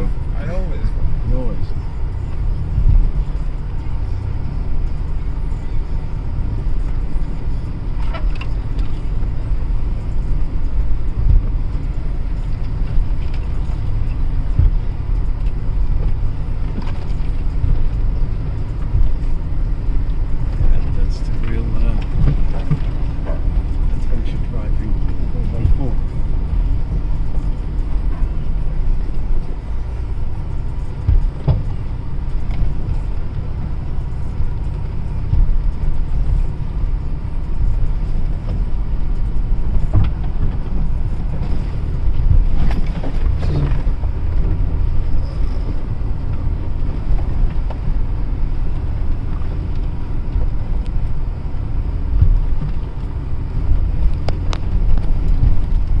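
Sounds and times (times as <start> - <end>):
vehicle engine and road rumble: 0.0 - 56.0
knocks and rattles from bumps: 11.1 - 28.4, 30.9 - 48.1, 52.0 - 56.0.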